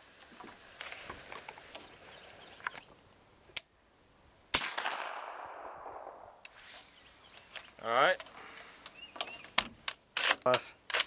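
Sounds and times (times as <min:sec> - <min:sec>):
gunshot echo: 0:04.5 - 0:06.4
suppressed rifle shots: 0:04.5 - 0:06.4.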